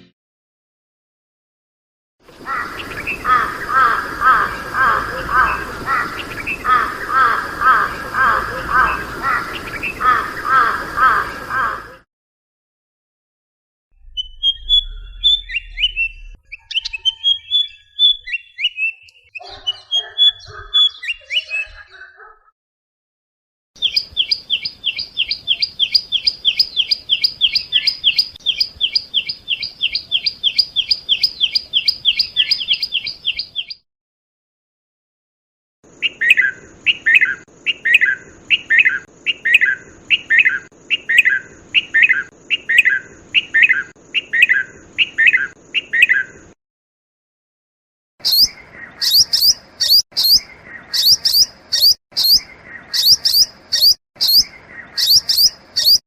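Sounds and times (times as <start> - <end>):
bird chirping: 2.4 - 12.0, 14.0 - 22.3, 23.8 - 33.8, 36.0 - 46.6, 48.2 - 56.0
bird fast repeated short notes: 51.0 - 52.4, 53.0 - 54.4.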